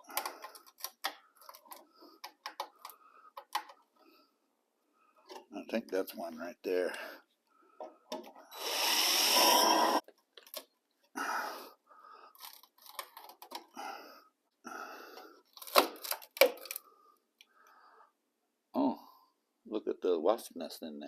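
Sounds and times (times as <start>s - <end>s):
power drill drilling metal: 8.5s - 10.0s.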